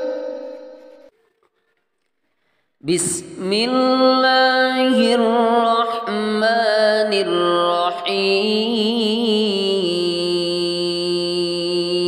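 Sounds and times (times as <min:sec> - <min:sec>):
person chanting melodic recitation: 0:02.8 - 0:12.0.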